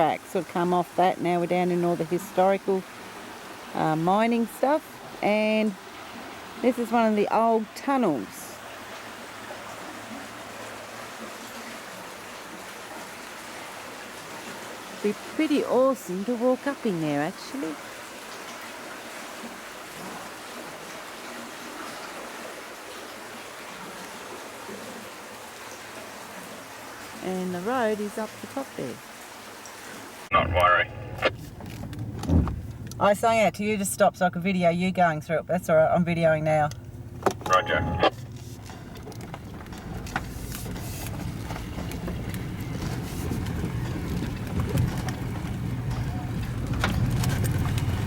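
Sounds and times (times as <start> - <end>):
water rushing: 0.0 - 33.5, 37.5 - 48.0
engine running low: 30.4 - 33.6, 35.8 - 48.0.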